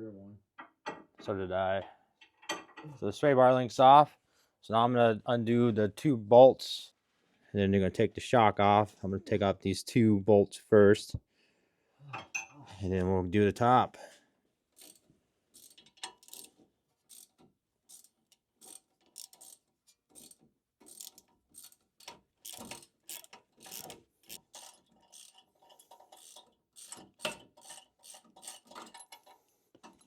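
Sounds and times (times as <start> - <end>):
ratchet wrench clicking: 15.6 - 16.5, 17.1 - 17.3, 17.9 - 19.6, 20.2 - 28.8.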